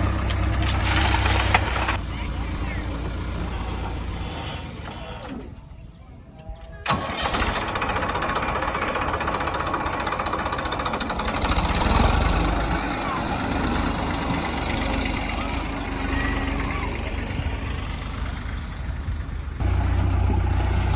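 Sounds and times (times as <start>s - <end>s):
heavy machinery diesel engine: 0.0s - 5.8s, 6.8s - 20.9s.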